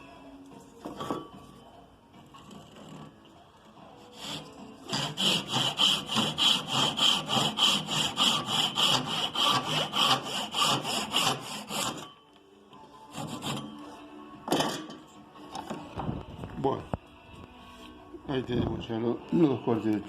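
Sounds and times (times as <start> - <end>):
hand saw cutting wood: 2.5 - 3.2, 4.0 - 12.1, 13.1 - 13.8.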